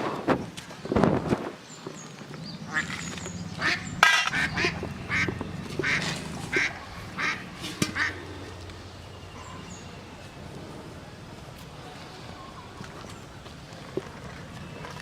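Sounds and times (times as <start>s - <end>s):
bird giving harsh calls: 2.6s - 9.8s.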